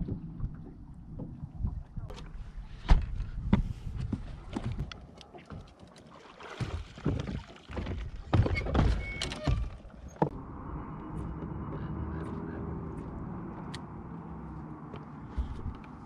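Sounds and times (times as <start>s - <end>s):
hollow knocks in a boat: 6.6s - 10.4s.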